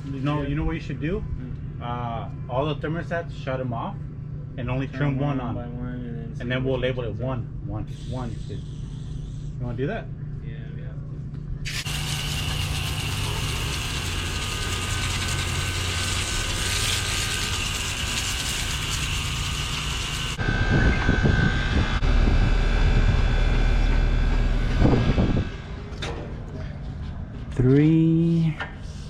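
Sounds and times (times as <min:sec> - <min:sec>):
air conditioner fan and compressor whirring: 0:00.0 - 0:29.0
low rumbling: 0:10.0 - 0:29.0.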